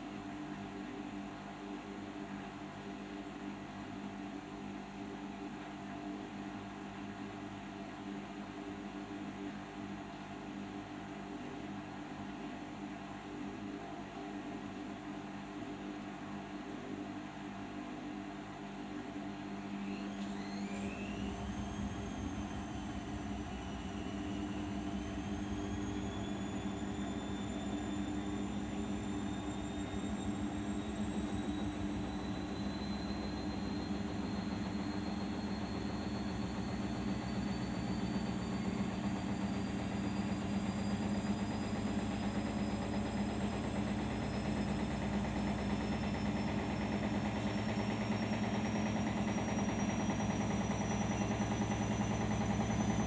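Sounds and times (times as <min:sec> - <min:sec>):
washing machine motor whine: 0:18.6 - 0:53.0.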